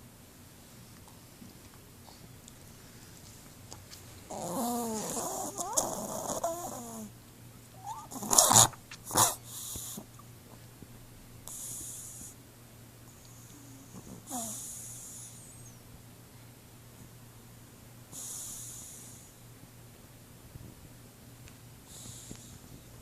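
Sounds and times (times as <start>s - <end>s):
dog snoring: 4.3s - 7.1s, 7.8s - 10.0s, 11.4s - 12.3s, 13.3s - 15.7s, 18.1s - 19.3s, 21.9s - 22.6s
dog snorting: 4.3s - 7.1s, 7.8s - 10.0s, 13.6s - 15.3s.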